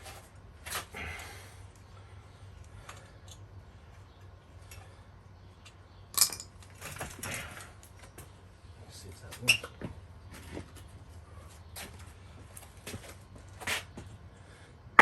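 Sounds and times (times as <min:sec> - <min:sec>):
metal tools clinking: 0:06.2 - 0:06.9.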